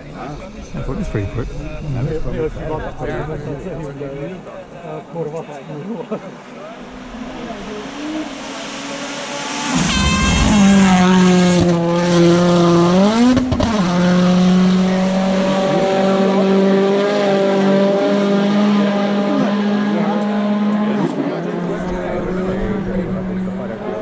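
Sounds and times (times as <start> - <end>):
rally car passing at speed: 6.3 - 24.0.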